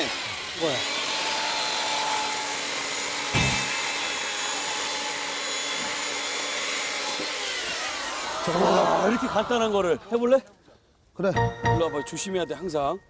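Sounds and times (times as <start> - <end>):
electric chainsaw motor whining: 0.0 - 9.1
thump: 3.4 - 3.7.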